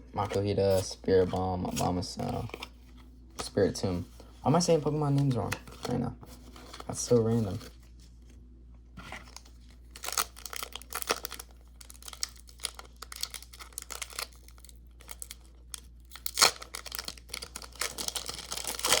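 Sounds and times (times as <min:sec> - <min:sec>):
foil wrapper tearing and crinkling: 0:09.3 - 0:19.0.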